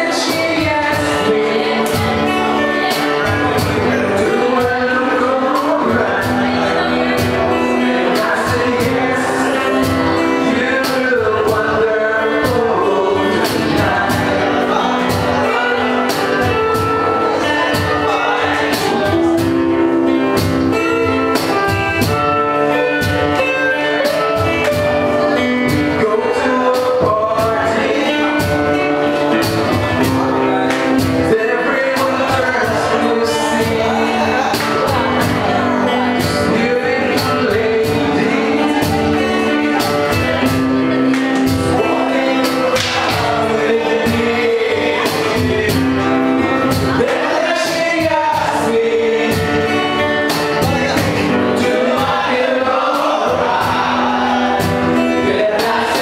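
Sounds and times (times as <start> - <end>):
live band playing: 0.0 - 56.0
person singing: 0.0 - 56.0
drum hits: 42.4 - 43.5.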